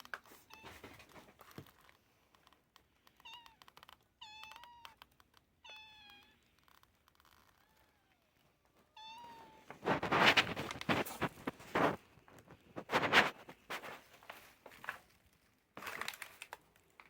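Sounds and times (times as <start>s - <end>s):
cat meowing: 3.2s - 5.0s, 5.6s - 6.4s, 7.5s - 9.7s.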